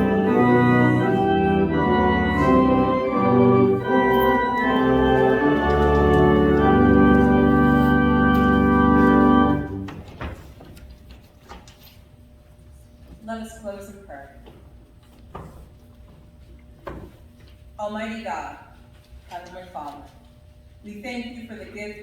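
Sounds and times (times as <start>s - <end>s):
organ playing a hymn: 0.0s - 10.1s.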